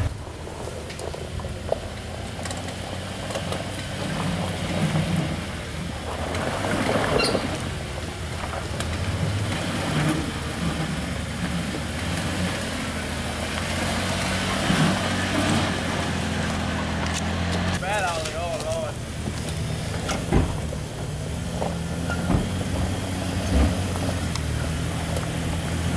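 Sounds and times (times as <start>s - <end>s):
rush of noise: 0.0s - 1.5s
vehicle engine at low revs: 0.0s - 25.9s.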